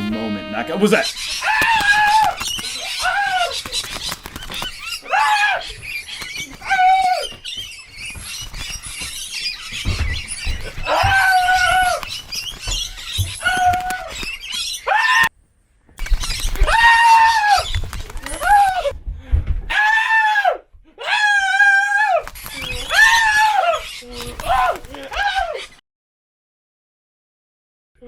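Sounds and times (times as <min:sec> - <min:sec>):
loud squawking calls: 0:00.6 - 0:15.3, 0:19.7 - 0:25.8.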